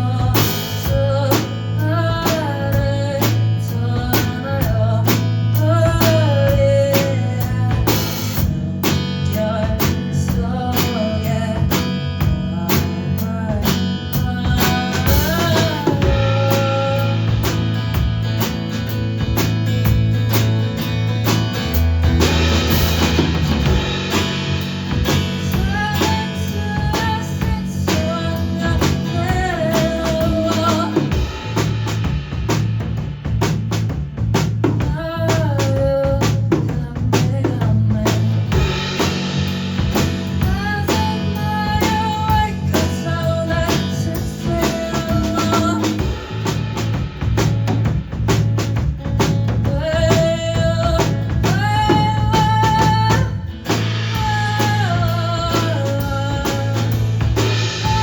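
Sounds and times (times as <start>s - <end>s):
person singing: 0.0s - 8.4s, 9.2s - 17.5s, 25.4s - 31.3s, 40.4s - 46.1s, 49.7s - 53.5s, 54.1s - 57.2s, 57.8s - 58.0s
bass: 0.0s - 58.0s
drum kit with rimshots: 0.0s - 58.0s
guitar: 0.0s - 58.0s.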